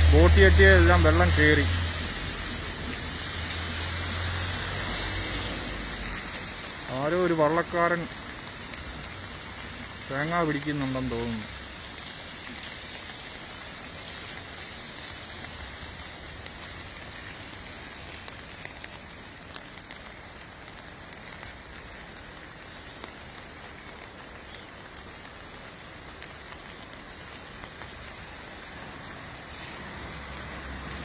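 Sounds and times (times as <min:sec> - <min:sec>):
water hissing: 0:00.0 - 0:18.4, 0:28.4 - 0:31.0.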